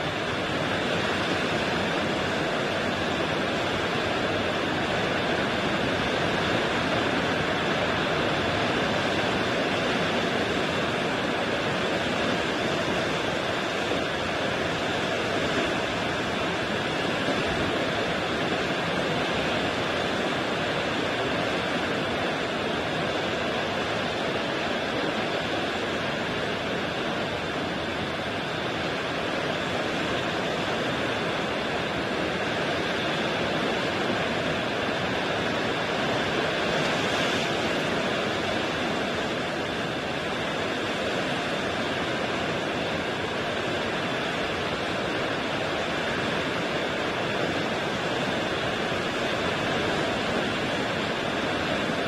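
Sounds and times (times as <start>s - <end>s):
waves washing on shore: 0.0s - 52.0s.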